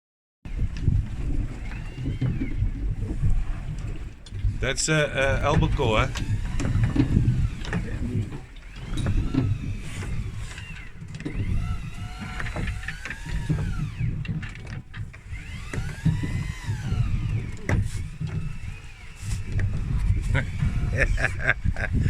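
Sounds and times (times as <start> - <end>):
boat engine rumbling: 0.5 - 22.0.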